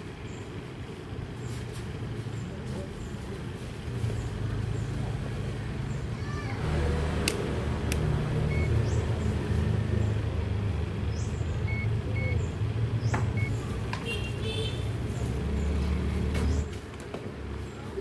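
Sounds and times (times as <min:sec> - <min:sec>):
sharp clicks: 0:07.2 - 0:08.7.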